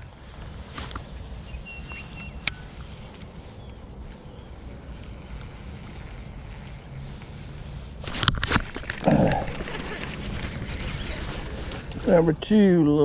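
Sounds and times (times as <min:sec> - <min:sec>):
faint thin whistle: 0:01.6 - 0:02.7.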